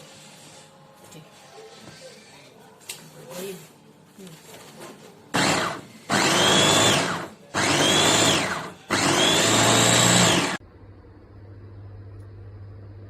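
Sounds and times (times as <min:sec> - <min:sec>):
electric food chopper motor: 0:05.4 - 0:10.6
faint low hum: 0:10.6 - 0:13.0.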